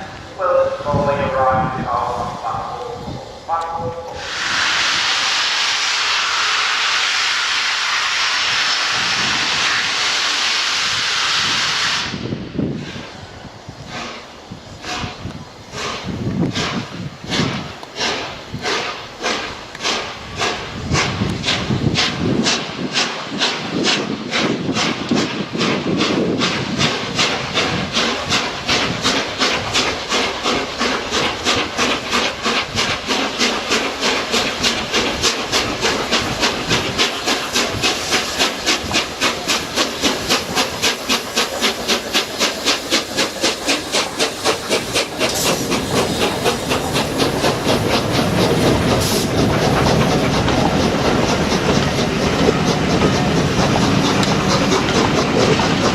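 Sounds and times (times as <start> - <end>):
steam hiss: 0.0 - 55.9
steam locomotive exhaust beats: 0.0 - 55.9
train rolling past: 0.0 - 55.9.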